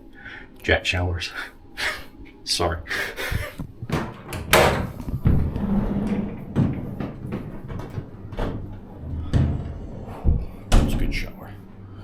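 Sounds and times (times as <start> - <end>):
door bumps and clicks: 3.6 - 11.3
door knocks: 3.9 - 11.2.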